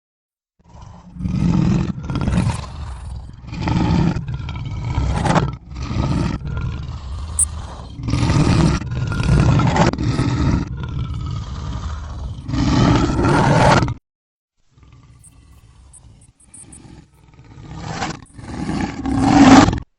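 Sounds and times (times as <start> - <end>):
reversed lion roars: 0.6 - 14.0, 14.7 - 19.9.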